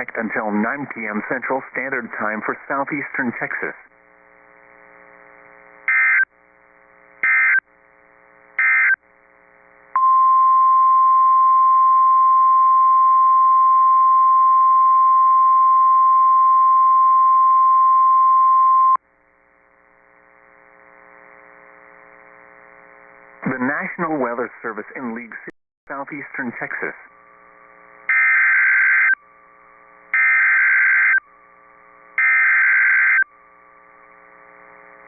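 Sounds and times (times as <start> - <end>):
faint radio hum: 0.0 - 9.9, 19.4 - 35.0
warbling data bursts: 26.0 - 31.3, 32.2 - 33.3.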